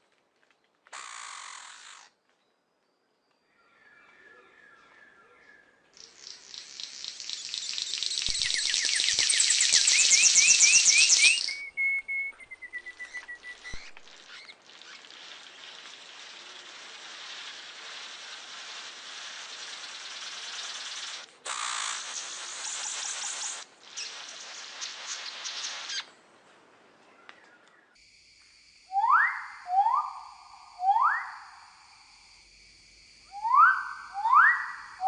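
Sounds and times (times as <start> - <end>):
bird chirping: 1.0 - 26.1
steady high hiss: 6.0 - 35.0
bird whistle: 7.6 - 14.5, 28.9 - 31.6, 33.3 - 35.0.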